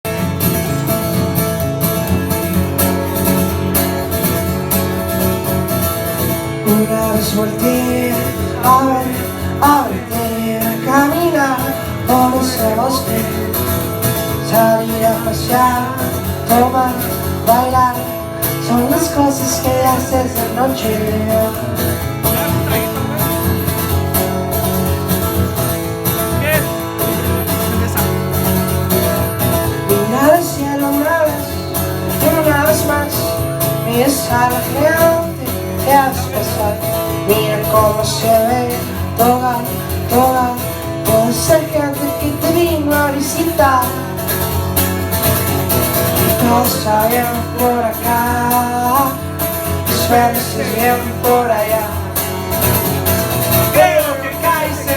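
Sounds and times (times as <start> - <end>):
live band playing guitar-led intro: 0.0 - 54.9
person singing: 6.6 - 13.7, 14.3 - 23.0, 29.9 - 44.2, 49.9 - 52.1.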